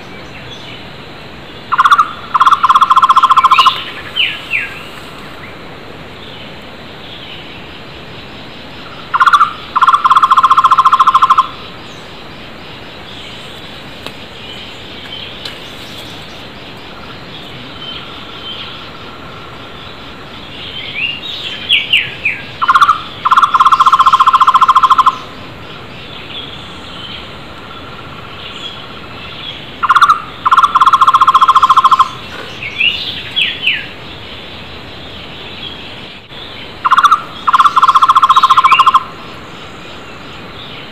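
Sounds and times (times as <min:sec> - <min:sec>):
bird calling hollow repeated notes: 0:01.6 - 0:05.6, 0:07.4 - 0:40.9
birds chirping and whistling: 0:01.7 - 0:05.5, 0:19.9 - 0:25.3, 0:28.5 - 0:40.0.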